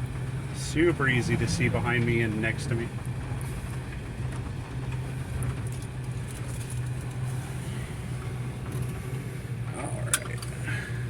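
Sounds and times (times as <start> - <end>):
truck engine droning: 0.0 - 11.0.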